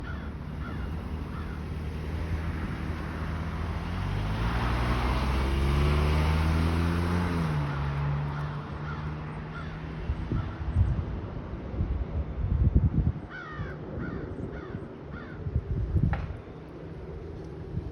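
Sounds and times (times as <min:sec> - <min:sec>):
crow cawing: 0:00.0 - 0:01.8, 0:08.3 - 0:10.6, 0:13.3 - 0:15.4
motor vehicle passing by: 0:00.0 - 0:12.4.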